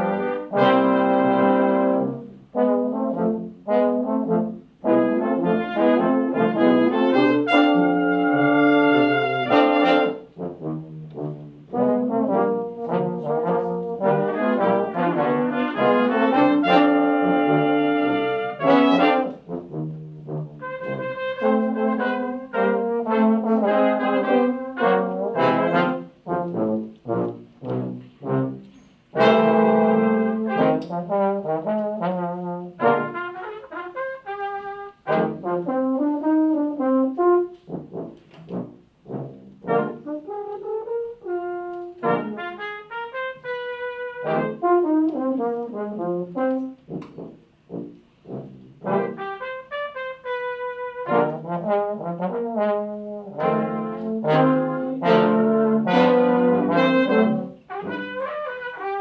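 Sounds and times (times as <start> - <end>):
brass ensemble playing: 0.0 - 59.0.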